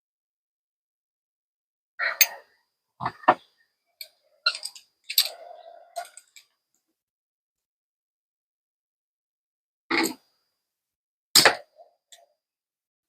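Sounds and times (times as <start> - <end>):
metal parts clicking and knocking: 4.0 - 5.4.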